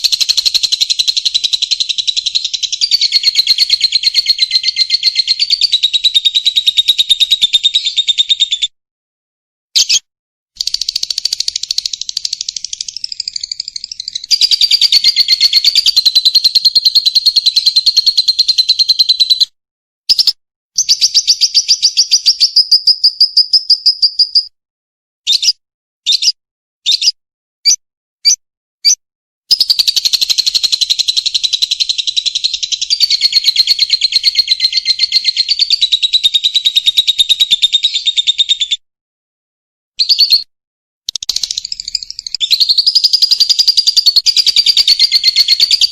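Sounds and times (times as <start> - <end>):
lovebird chattering trill: 0.0 - 8.7, 10.6 - 19.4, 26.1 - 38.7, 41.1 - 45.9.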